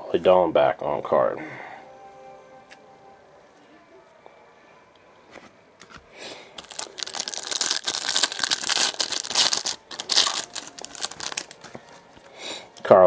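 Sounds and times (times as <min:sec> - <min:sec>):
wrapper tearing and crinkling: 0:06.6 - 0:11.8.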